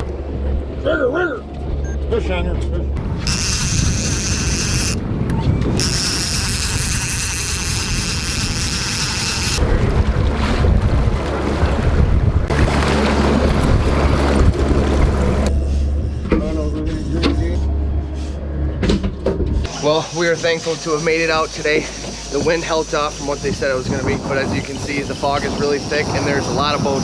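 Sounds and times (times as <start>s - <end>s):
wind buffeting microphone: 3.0s - 15.5s
boat engine drone: 3.0s - 18.7s
rushing water: 5.8s - 15.5s.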